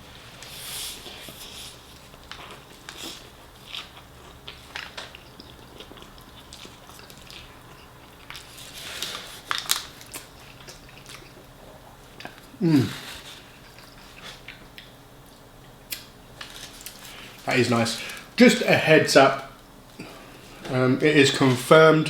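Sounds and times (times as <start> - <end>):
person chewing with wet smacks: 0.4 - 16.1.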